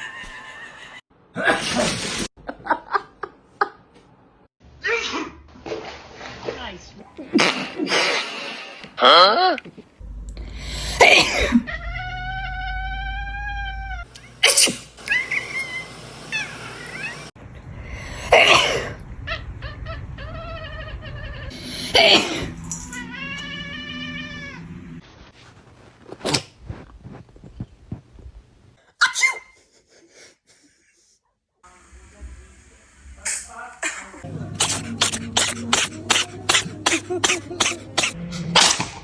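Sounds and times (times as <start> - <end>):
person sneezing: 14.4 - 14.9, 34.6 - 38.2.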